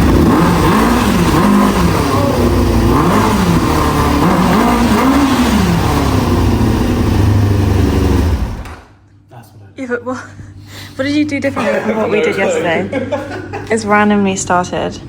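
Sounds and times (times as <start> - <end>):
motorcycle engine revving: 0.0 - 9.0.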